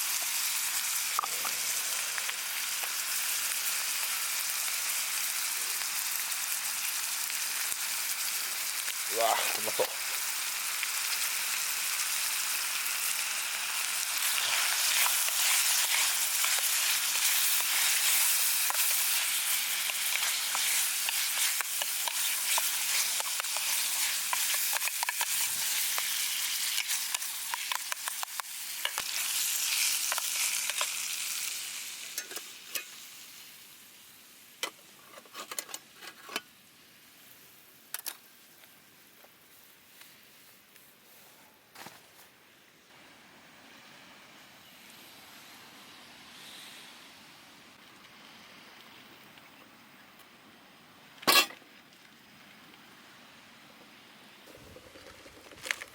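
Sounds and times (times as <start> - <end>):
meat sizzling in a frying pan: 0.0 - 34.6.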